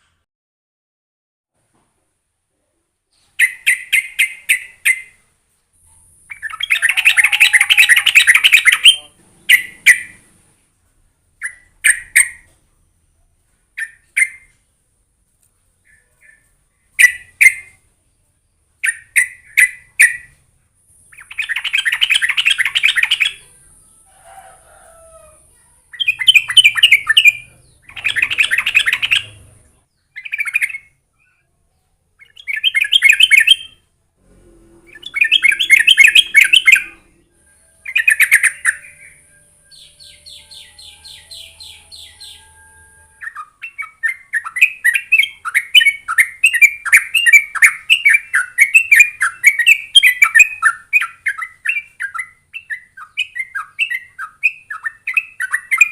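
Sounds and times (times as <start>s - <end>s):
bird chattering song: 3.2s - 5.2s, 5.9s - 10.3s, 11.4s - 12.5s, 15.8s - 17.8s, 18.8s - 23.8s, 25.9s - 33.9s, 34.9s - 55.9s.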